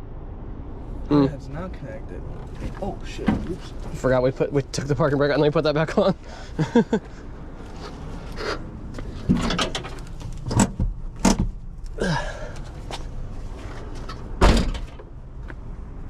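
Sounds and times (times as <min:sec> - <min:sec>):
low steady rumble: 0:00.0 - 0:16.0
metal clunks and knocks: 0:09.2 - 0:11.6.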